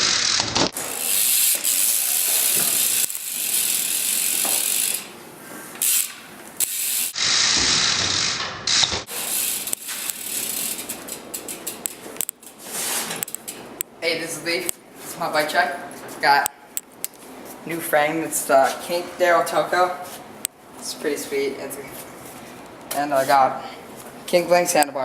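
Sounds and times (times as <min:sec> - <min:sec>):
bike hub ratcheting: 0:00.0 - 0:05.1, 0:05.8 - 0:12.6.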